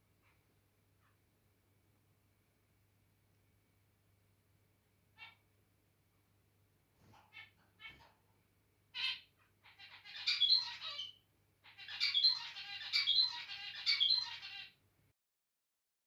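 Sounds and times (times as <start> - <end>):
finch buzzy chattering song: 9.0 - 14.8.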